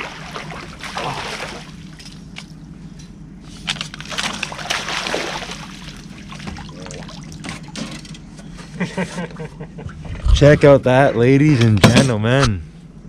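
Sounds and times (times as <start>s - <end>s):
fish thrashing and splashing water: 0.0s - 2.0s, 3.7s - 7.8s.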